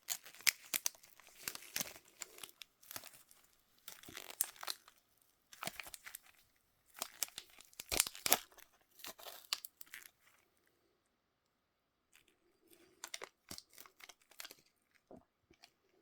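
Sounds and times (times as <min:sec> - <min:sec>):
packaging tearing and crinkling: 0:00.0 - 0:04.9, 0:07.0 - 0:10.1.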